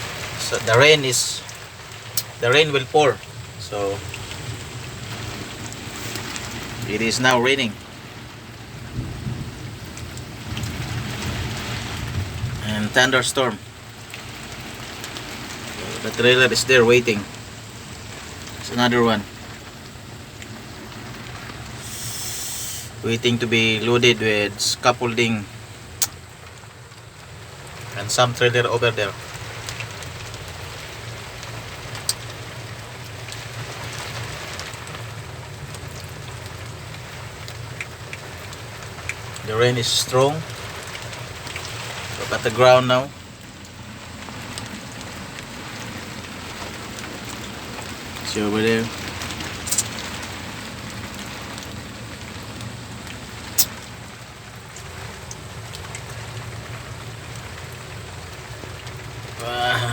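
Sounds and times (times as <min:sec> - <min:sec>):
heavy rain pouring: 0:00.0 - 0:59.9.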